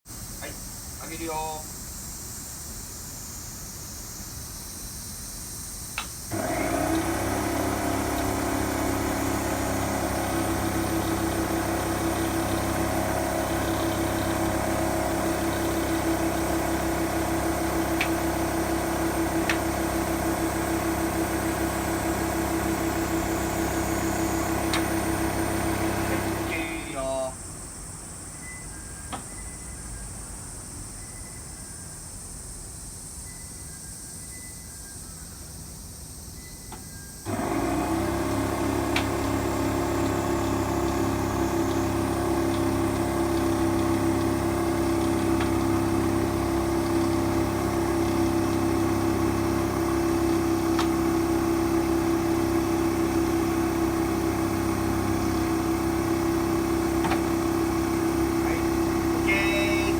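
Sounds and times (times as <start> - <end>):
machine motor humming: 6.3 - 27.3, 37.3 - 59.9.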